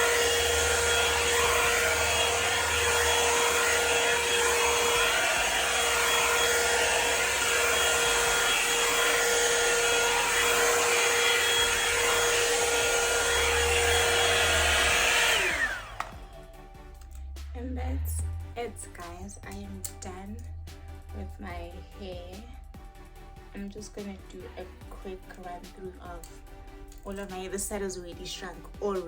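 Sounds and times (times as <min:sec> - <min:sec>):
hair dryer brush running: 0:00.0 - 0:16.5.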